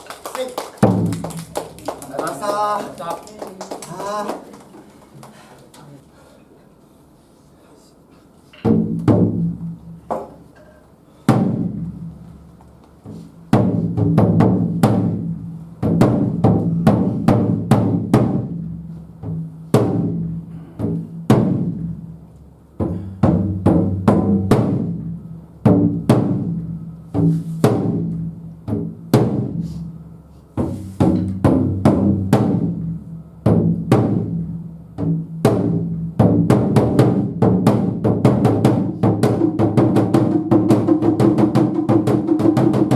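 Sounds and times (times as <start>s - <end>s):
deep drums striking: 0.8s - 1.3s, 8.7s - 10.0s, 13.5s - 22.1s, 22.8s - 29.6s, 30.6s - 42.9s.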